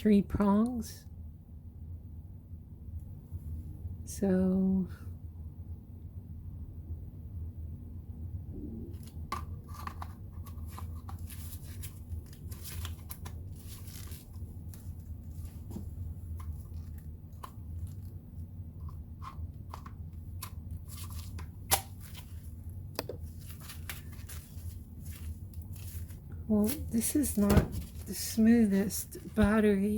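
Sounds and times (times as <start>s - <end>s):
plastic rustling and scraping: 8.9s - 18.2s, 18.8s - 29.9s.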